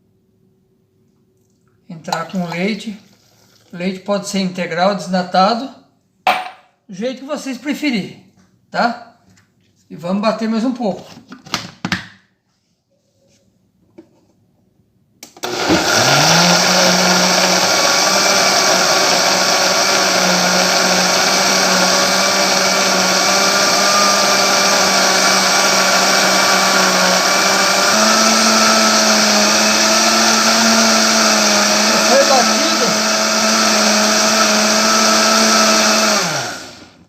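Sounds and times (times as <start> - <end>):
blender motor running: 15.2 - 37.0.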